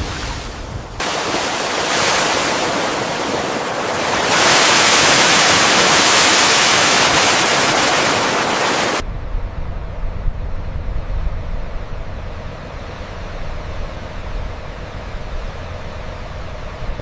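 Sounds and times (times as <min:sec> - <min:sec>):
sea waves rushing: 0:00.0 - 0:09.0.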